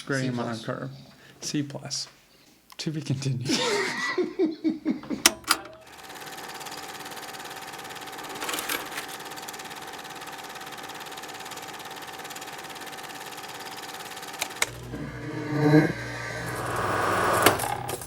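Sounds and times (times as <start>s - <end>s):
small machine clattering: 5.2s - 15.0s
machine hum: 5.3s - 18.0s.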